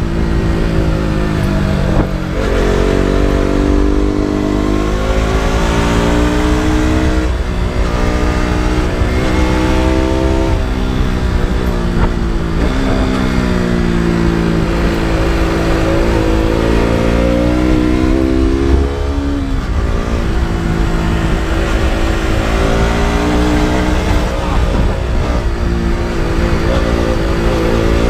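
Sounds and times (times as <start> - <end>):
low wind rumble: 0.0 - 28.0
motorcycle engine running: 0.0 - 28.0.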